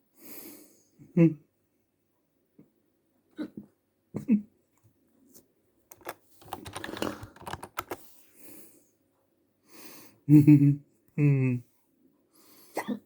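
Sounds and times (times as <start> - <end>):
rapid clicking: 5.9 - 8.0.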